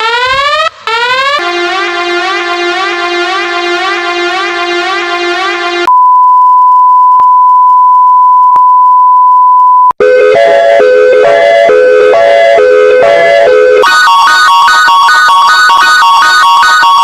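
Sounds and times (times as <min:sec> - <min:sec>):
pulsing electronic alarm tone: 0:00.0 - 0:05.9, 0:10.0 - 0:17.0
steady high beep: 0:05.9 - 0:09.9.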